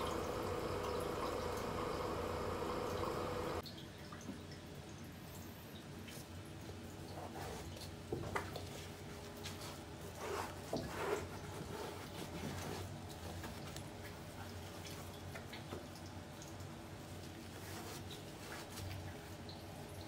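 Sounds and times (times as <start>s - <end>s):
exhaust fan humming: 0.0s - 3.6s.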